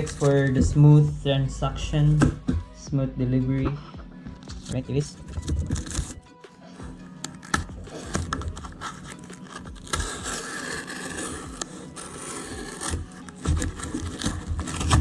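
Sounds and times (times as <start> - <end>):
packaging scraping and rustling: 5.1 - 6.2, 7.2 - 15.0.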